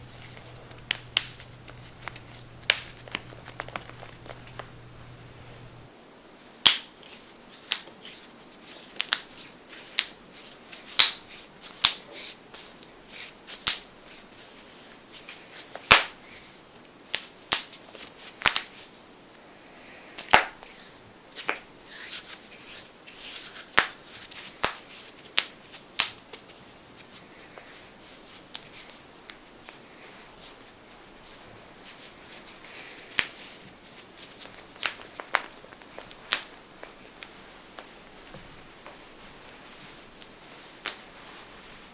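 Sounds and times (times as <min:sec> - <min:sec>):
knuckles cracking: 0:00.0 - 0:05.9.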